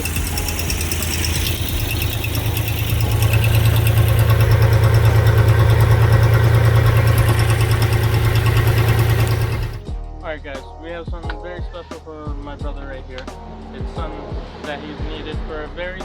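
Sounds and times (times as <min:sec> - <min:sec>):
boat engine idling: 0:00.0 - 0:09.8.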